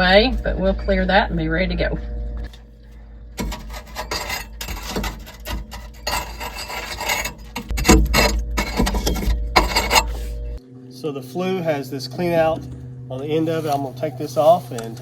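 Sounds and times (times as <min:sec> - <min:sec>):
hand tool scraping ash: 0:03.4 - 0:10.6.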